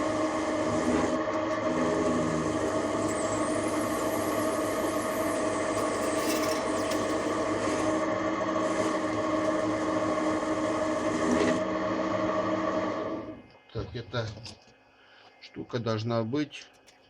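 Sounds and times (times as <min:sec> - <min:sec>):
lathe scraping metal part: 0:00.0 - 0:11.7
lathe humming: 0:00.0 - 0:13.4.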